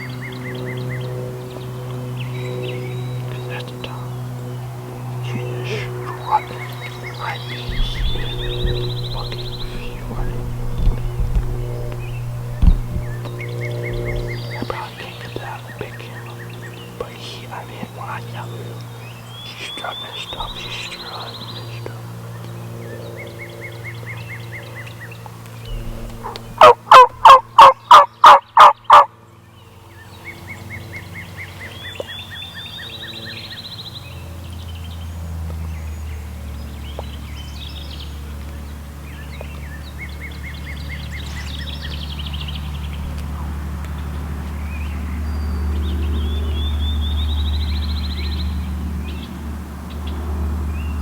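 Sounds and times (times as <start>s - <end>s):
songbirds trilling: 0.0s - 51.0s
turkey yelps: 26.2s - 29.0s.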